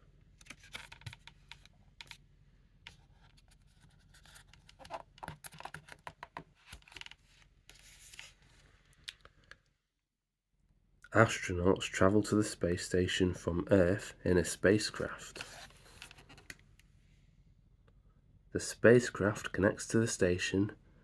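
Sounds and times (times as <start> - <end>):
paper pages rustling: 0.4 - 2.2, 2.9 - 9.0, 15.3 - 16.6.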